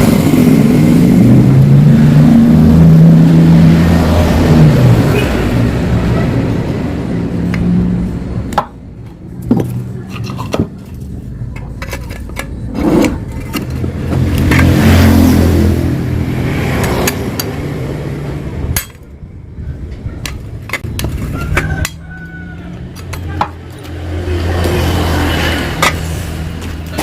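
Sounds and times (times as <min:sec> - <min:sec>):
two-stroke motorcycle engine revving: 0:00.0 - 0:06.8, 0:12.7 - 0:18.4.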